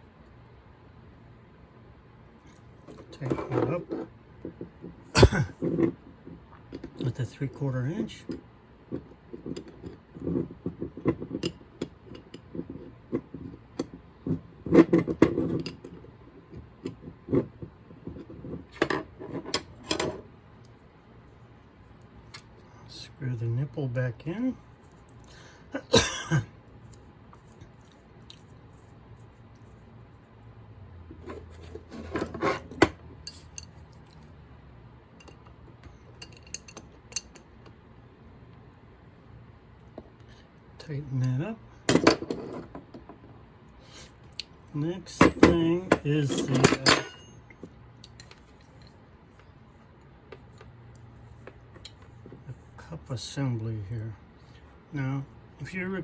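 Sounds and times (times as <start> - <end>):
metal parts scraping and rattling: 31.1 - 34.2, 36.1 - 37.4, 45.1 - 47.4, 48.1 - 49.0
metal tools clinking on workbench: 36.2 - 37.4, 45.2 - 47.4.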